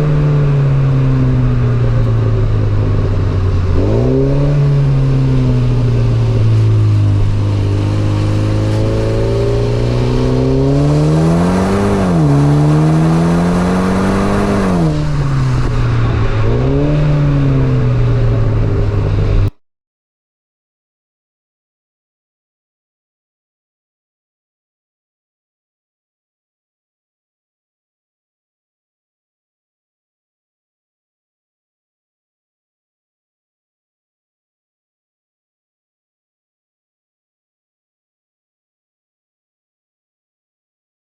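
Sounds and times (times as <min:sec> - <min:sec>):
car engine revving through gears: 0:00.0 - 0:19.6.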